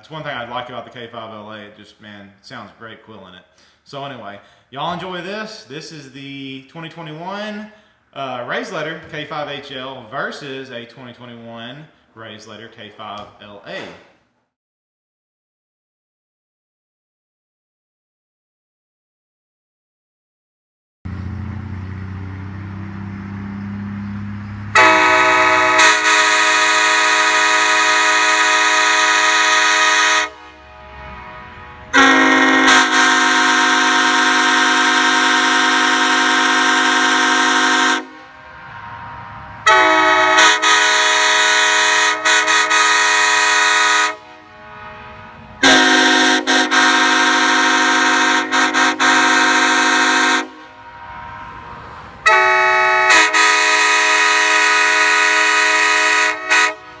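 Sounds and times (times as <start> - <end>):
train horn blasts: 24.7 - 57.0
low hum: 30.3 - 32.6, 38.0 - 40.6, 50.5 - 52.3.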